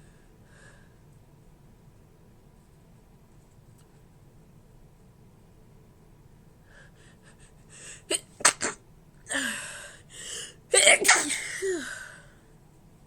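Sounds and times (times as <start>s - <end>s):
catching breaths: 6.7s - 8.1s, 9.3s - 10.6s
woman sneezing: 8.1s - 9.6s, 10.8s - 12.2s.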